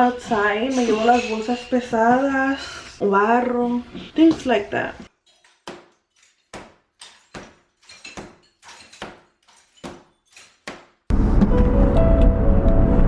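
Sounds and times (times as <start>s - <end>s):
music: 11.1s - 13.0s.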